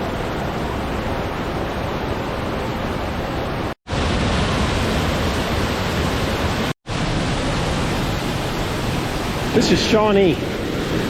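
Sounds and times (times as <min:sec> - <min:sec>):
rushing creek and waterfall: 0:00.0 - 0:11.0.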